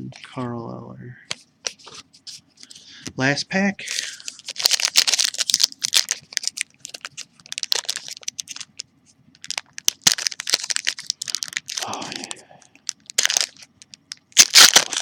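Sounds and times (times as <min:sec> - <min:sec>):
plastic wrapper crinkling: 0:03.9 - 0:15.0
wrapper snapping: 0:04.0 - 0:08.8, 0:09.4 - 0:15.0.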